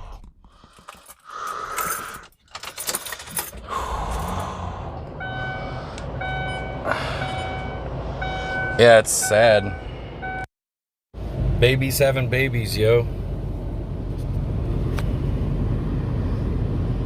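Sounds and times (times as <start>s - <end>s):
street traffic: 0.7s - 10.5s, 11.2s - 17.0s.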